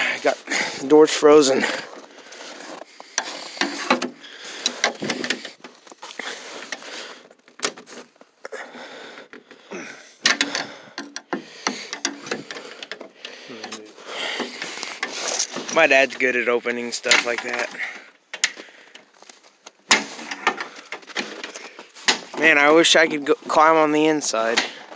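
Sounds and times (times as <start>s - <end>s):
cab door and latch rattling: 10.2s - 13.1s.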